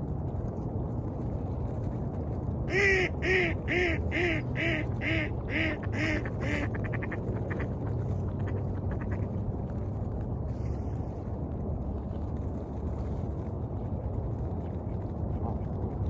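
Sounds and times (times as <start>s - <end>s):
steady low rumble: 0.0s - 16.0s
duck quacking: 2.7s - 7.7s.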